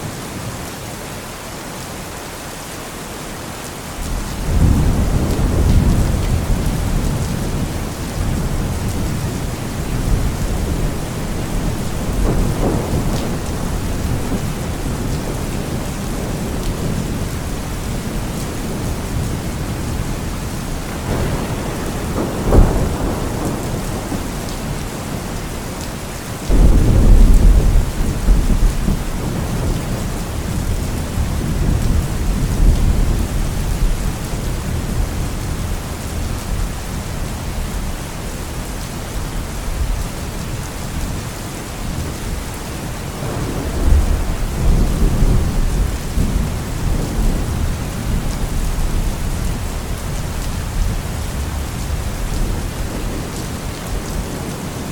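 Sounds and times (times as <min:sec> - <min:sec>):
steady rain: 0:00.0 - 0:54.9
thunder rumbling: 0:04.0 - 0:54.7
thunder crack: 0:04.1 - 0:20.0, 0:20.8 - 0:25.2, 0:26.5 - 0:34.0, 0:43.2 - 0:49.7.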